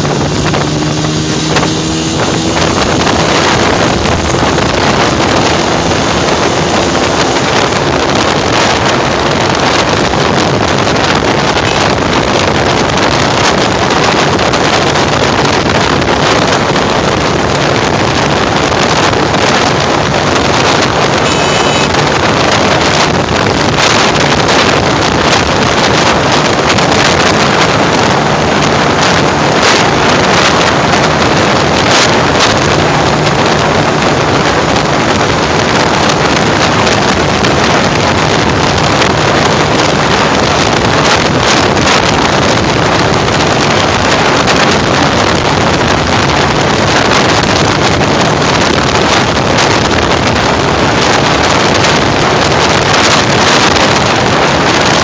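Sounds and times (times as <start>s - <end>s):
motorcycle engine running: 0.0s - 55.0s
wind noise on microphone: 0.0s - 55.0s.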